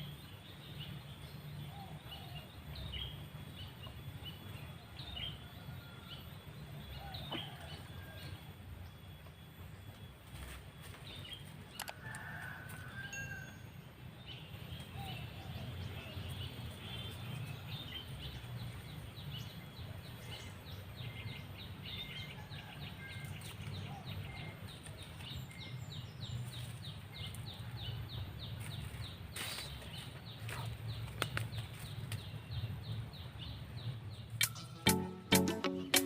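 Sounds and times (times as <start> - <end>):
rapid short high notes: 34.4 - 36.0.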